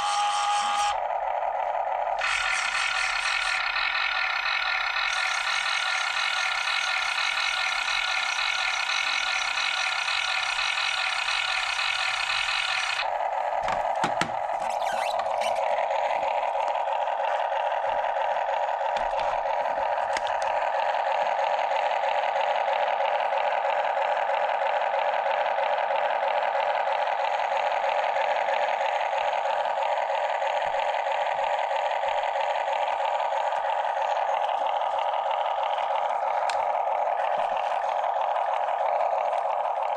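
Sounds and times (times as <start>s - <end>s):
small electric motors whirring: 0.0s - 21.2s, 27.8s - 39.9s
clicks and knocks: 13.6s - 14.4s.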